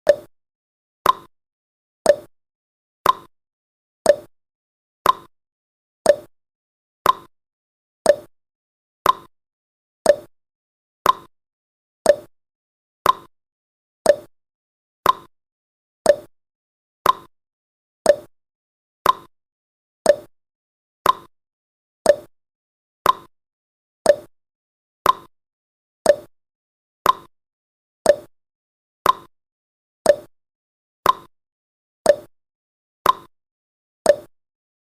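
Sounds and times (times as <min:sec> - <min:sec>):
timer ticking: 0:00.0 - 0:00.3, 0:01.0 - 0:01.3, 0:02.1 - 0:02.3, 0:03.0 - 0:03.3, 0:04.1 - 0:04.3, 0:05.0 - 0:05.3, 0:06.1 - 0:06.3, 0:07.0 - 0:07.3, 0:08.1 - 0:08.3, 0:09.0 - 0:09.3, 0:10.0 - 0:10.3, 0:11.0 - 0:11.3, 0:12.0 - 0:12.3, 0:13.0 - 0:13.3, 0:14.0 - 0:14.3, 0:15.0 - 0:15.3, 0:16.1 - 0:16.3, 0:17.0 - 0:17.3, 0:18.1 - 0:18.3, 0:19.0 - 0:19.3, 0:20.1 - 0:20.3, 0:21.0 - 0:21.3, 0:22.1 - 0:22.3, 0:23.0 - 0:23.3, 0:24.1 - 0:24.3, 0:25.0 - 0:25.3, 0:26.0 - 0:26.3, 0:27.0 - 0:27.3, 0:28.1 - 0:28.3, 0:29.0 - 0:29.3, 0:30.1 - 0:30.3, 0:31.0 - 0:31.3, 0:32.1 - 0:32.3, 0:33.0 - 0:33.3, 0:34.1 - 0:34.3.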